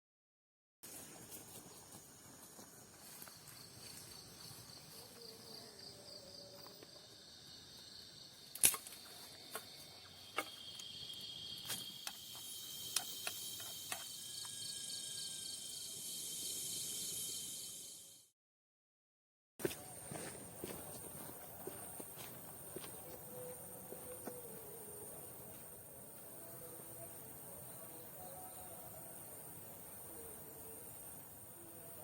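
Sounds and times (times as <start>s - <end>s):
night insects chorus: 0.9s - 18.3s, 19.6s - 32.0s
sharp clicks: 8.5s - 9.0s.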